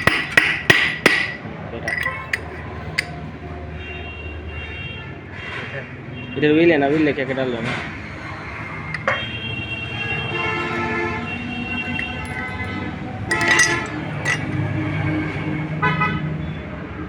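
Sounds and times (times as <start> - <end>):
sharp metallic clink: 0.0 - 3.2, 11.7 - 14.7
road traffic passing: 0.0 - 17.0
vehicle horns: 3.7 - 6.6, 8.6 - 16.5.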